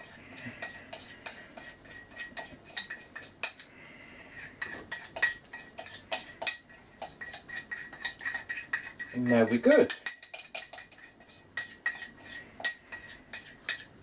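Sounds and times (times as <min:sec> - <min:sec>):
teaspoon clinking in a cup: 0:00.0 - 0:03.7, 0:04.4 - 0:13.9.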